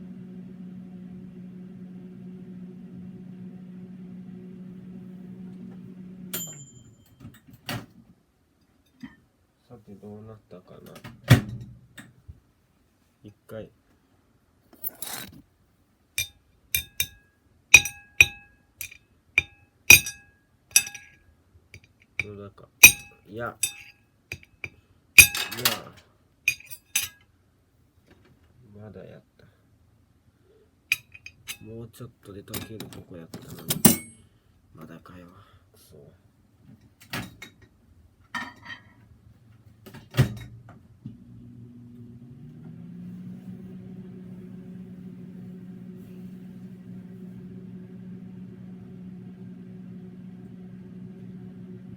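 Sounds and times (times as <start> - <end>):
microwave running hum: 0.0 - 7.5, 17.7 - 21.1, 39.5 - 51.9
hard object clinking on dish: 16.2 - 17.2, 17.8 - 21.1, 22.8 - 24.5, 25.2 - 25.6, 26.5 - 27.2.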